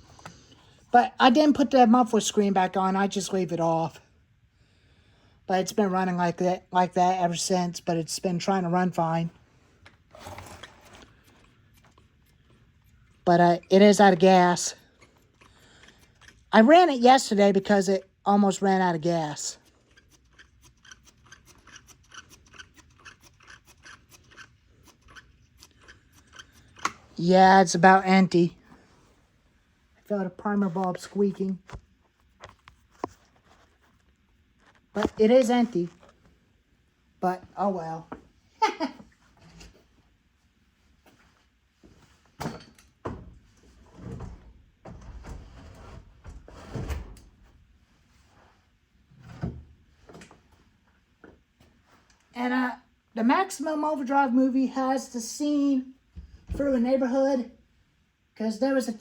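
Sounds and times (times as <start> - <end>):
scraping and rustling: 9.7 - 13.2
chainsaw primer bulb pumped squeaking: 19.6 - 27.0
objects knocking and clunking: 42.3 - 47.5.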